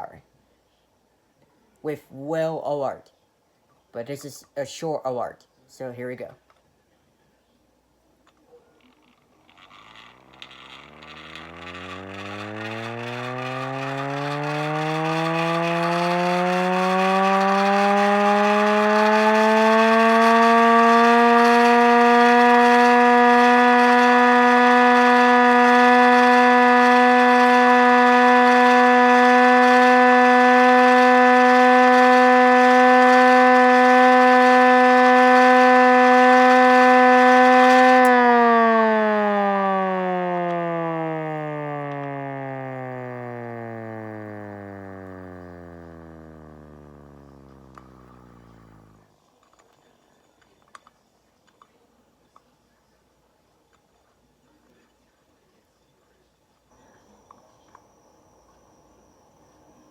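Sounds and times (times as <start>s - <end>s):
hand crank siren wailing: 9.1s - 49.0s, 56.8s - 59.9s.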